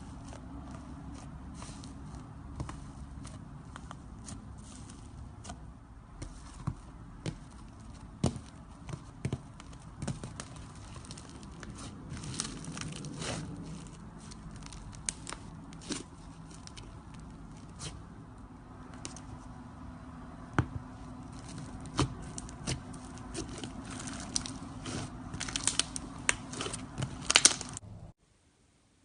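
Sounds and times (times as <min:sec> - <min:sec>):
slime squishing: 0:00.0 - 0:19.5, 0:20.6 - 0:27.8
slime crust crackling and popping: 0:09.1 - 0:18.0, 0:21.3 - 0:27.8.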